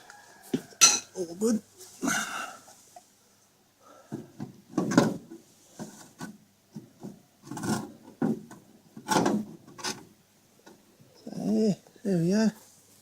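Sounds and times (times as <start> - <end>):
handling knocks and scrapes: 4.1 - 10.1.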